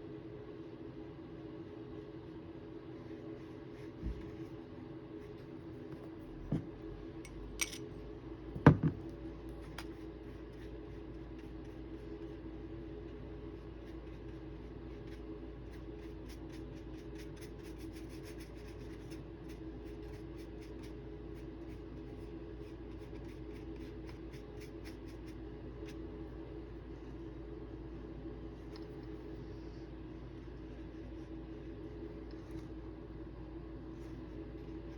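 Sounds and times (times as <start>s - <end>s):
steady low hum: 0.0s - 34.9s
knocks on a desk: 8.6s - 9.1s.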